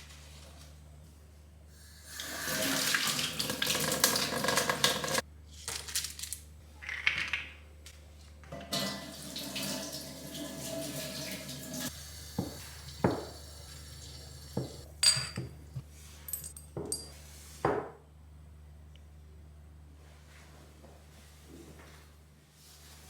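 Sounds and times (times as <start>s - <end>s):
kitchen tap running into sink: 2.0s - 5.2s, 8.5s - 14.8s.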